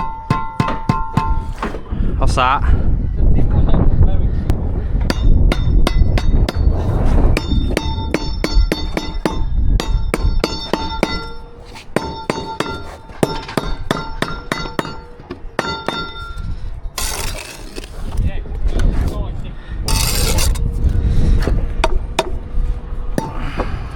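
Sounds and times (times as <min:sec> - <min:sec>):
hammer striking metal: 0:00.0 - 0:01.8, 0:05.1 - 0:06.8, 0:07.4 - 0:17.6, 0:21.8 - 0:22.4, 0:23.2 - 0:23.6
scraping rush: 0:04.6 - 0:08.4, 0:16.2 - 0:23.9.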